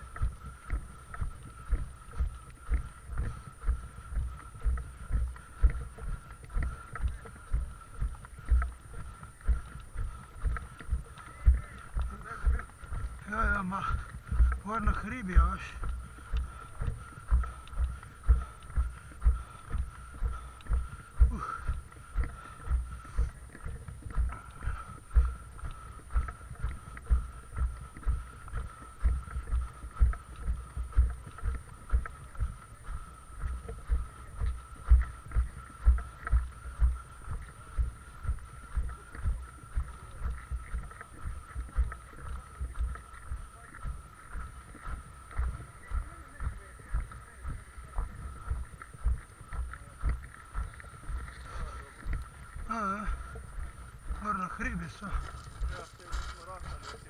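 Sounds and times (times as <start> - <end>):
footsteps walking: 0.0 - 57.0.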